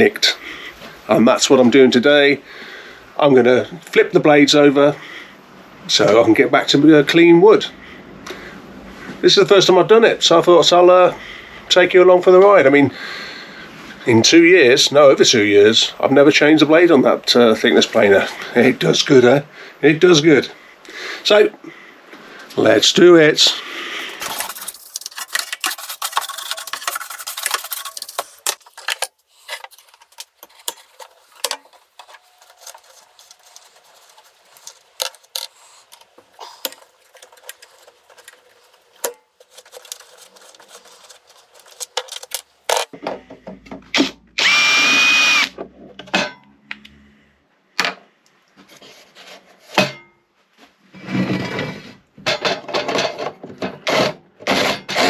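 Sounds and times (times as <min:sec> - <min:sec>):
dense clattering: 0:24.0 - 0:42.9
tools and metal parts clicking: 0:24.0 - 0:42.9
power drill running: 0:44.4 - 0:45.5.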